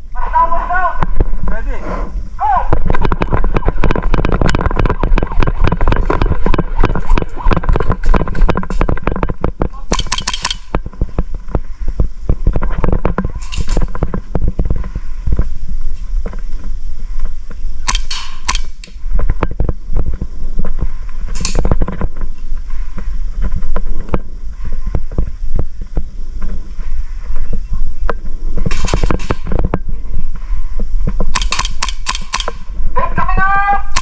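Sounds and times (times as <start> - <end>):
low rumble: 0.0 - 31.4
airsoft guns firing: 2.7 - 11.0, 17.8 - 19.0, 28.7 - 29.6, 31.3 - 32.7.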